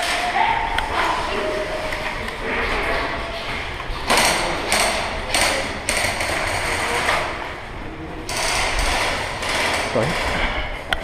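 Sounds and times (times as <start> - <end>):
rapid mechanical ratcheting: 4.1 - 7.4, 8.3 - 10.6.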